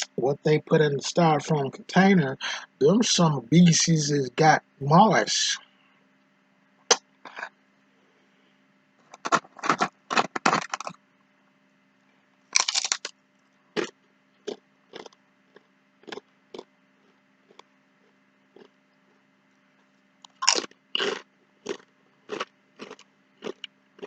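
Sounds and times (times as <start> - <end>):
man chewing crunchy food: 7.3 - 7.5, 9.1 - 11.0, 12.6 - 13.1, 13.8 - 19.2, 19.8 - 24.0.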